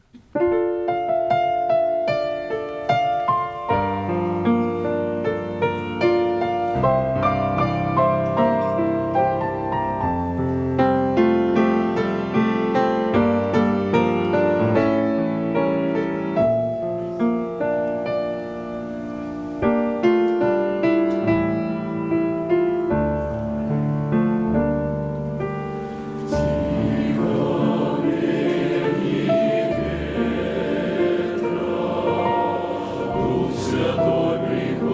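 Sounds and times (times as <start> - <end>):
piano accompaniment: 0.0 - 34.9
choir singing a hymn: 26.2 - 34.9.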